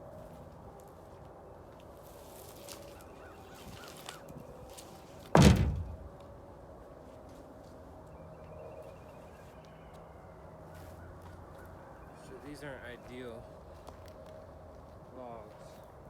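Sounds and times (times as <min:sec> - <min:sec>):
loud thud: 0:05.4 - 0:06.2.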